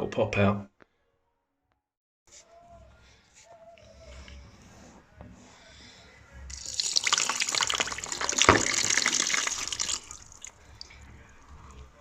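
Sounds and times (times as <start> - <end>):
water pouring from bucket: 6.5 - 11.7.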